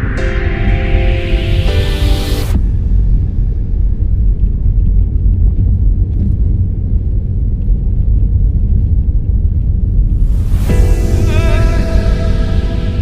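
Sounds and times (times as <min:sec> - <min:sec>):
car engine and tyre rumble: 0:02.6 - 0:10.7.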